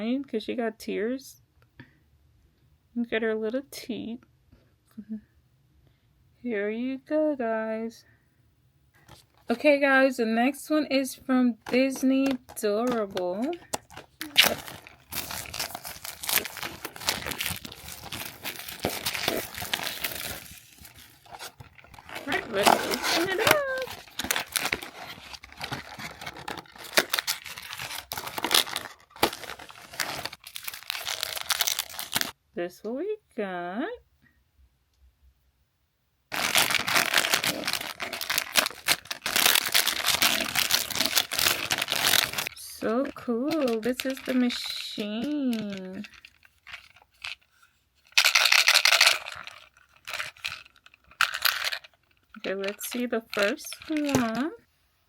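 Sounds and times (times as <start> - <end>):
wrapper crinkling: 11.6 - 32.4, 36.3 - 54.6
package wrapper ripping: 12.4 - 32.4, 36.3 - 42.6, 45.5 - 47.5, 48.1 - 54.4.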